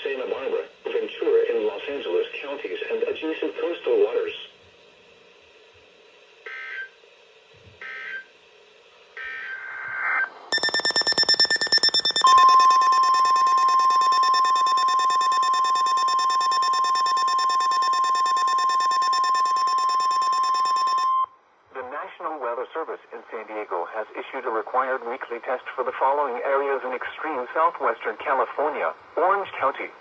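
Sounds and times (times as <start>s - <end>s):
data tone bursts: 10.5s - 21.3s
steady single-pitch alarm tone: 10.5s - 21.3s
rapid buzzing pulse: 10.6s - 21.1s.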